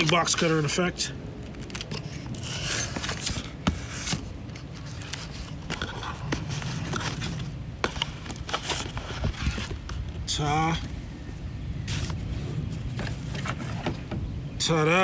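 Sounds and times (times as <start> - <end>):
cardboard box knocks and clicks: 2.9 - 4.3.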